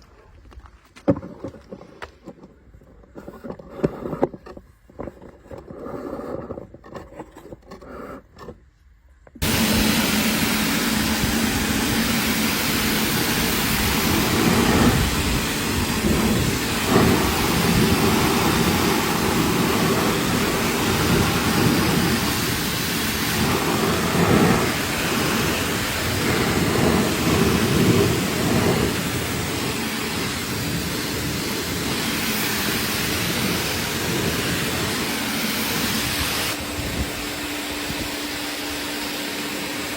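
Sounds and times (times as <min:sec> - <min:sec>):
pressure washer spraying water: 0:09.4 - 0:39.9.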